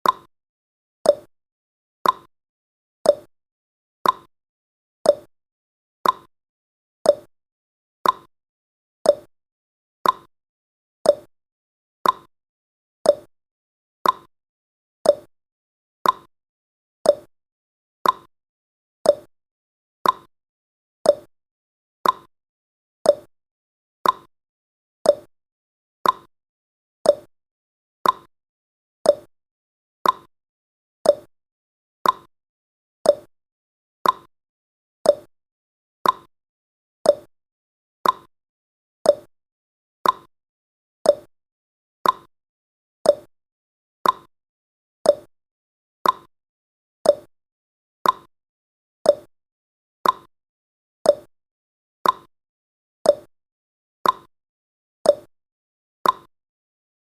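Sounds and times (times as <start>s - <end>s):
countdown timer ticking: 29.1s - 29.3s, 33.1s - 33.3s, 37.1s - 37.3s, 41.1s - 41.3s, 43.1s - 43.3s, 45.1s - 45.3s, 47.1s - 47.3s.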